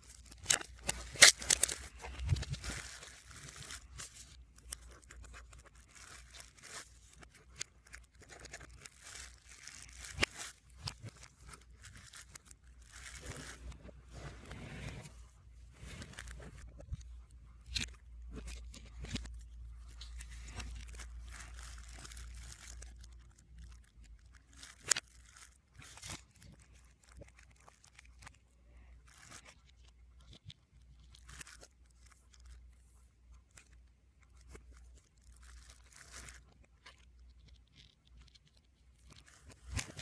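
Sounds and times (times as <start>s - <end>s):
plastic wrap and paper crinkling: 0.0s - 40.0s
packaging clicks: 0.2s - 3.0s.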